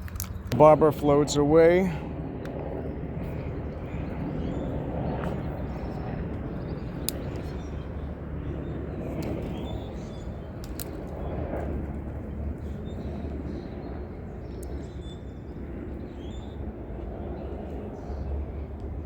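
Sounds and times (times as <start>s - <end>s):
low outdoor rumble: 0.0s - 19.0s
faint sharp clicks: 10.6s - 11.1s.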